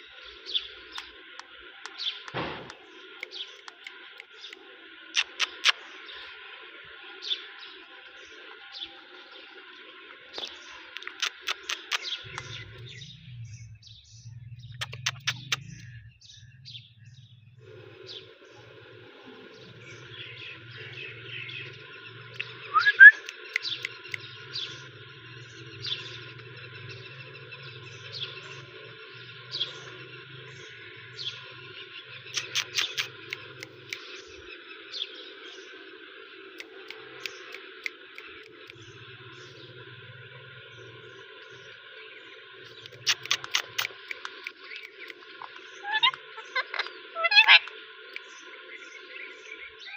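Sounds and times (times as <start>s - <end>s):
faint steady hum: 0.0s - 49.9s
parakeet chirps: 0.5s - 5.9s, 10.4s - 16.6s, 19.8s - 34.4s, 42.6s - 48.4s
sharp clicks: 0.9s - 4.6s, 5.2s - 5.8s, 10.4s - 12.6s, 14.7s - 15.9s, 22.3s - 24.3s, 32.3s - 34.2s, 36.6s - 38.9s, 42.6s - 46.2s
parrot chirping: 5.2s - 5.8s, 10.4s - 13.1s, 14.7s - 16.1s, 21.6s - 24.6s, 32.3s - 34.2s, 42.7s - 48.2s.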